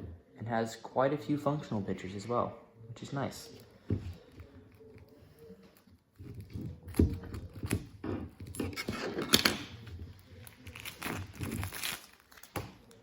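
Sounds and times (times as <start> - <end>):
packaging being torn: 10.4 - 13.0.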